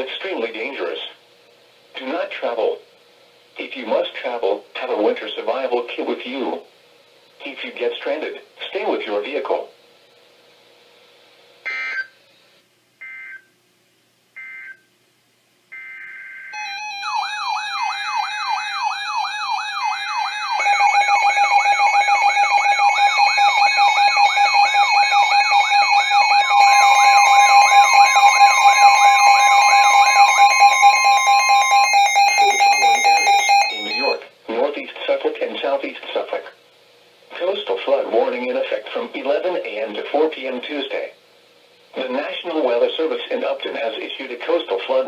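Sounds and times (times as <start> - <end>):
steady single alarm tone: 11.7 - 12.2, 15.7 - 34.3
repeating rising alarm sweep: 15.7 - 34.2
buzzy data tone bursts: 15.7 - 34.3
steady beeping tones: 15.7 - 34.3.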